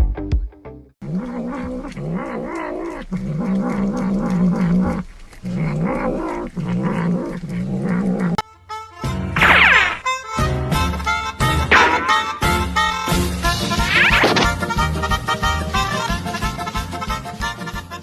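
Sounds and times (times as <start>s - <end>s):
cat yowling: 1.1s - 8.4s, 13.8s - 14.4s.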